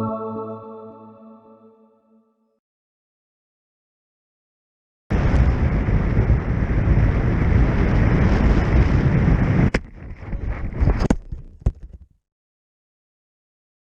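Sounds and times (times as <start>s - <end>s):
wind buffeting microphone: 5.1s - 11.3s.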